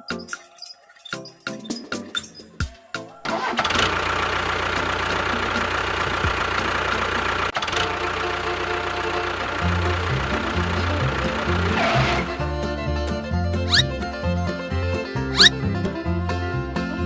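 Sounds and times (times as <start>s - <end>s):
small engine rattling: 3.2s - 14.2s.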